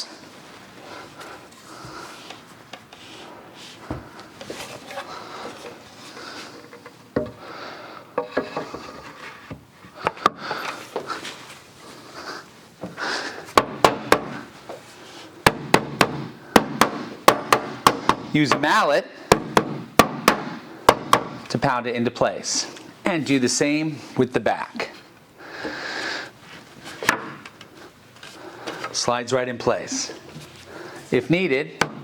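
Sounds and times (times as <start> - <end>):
wooden parts rubbing: 2.0 - 11.6
rubber mallet tapping wood: 13.6 - 14.4, 15.5 - 18.7, 19.3 - 21.5, 31.8 - 32.0.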